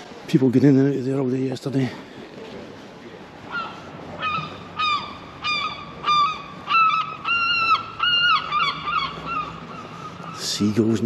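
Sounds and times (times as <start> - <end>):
gull calling: 3.5 - 11.0.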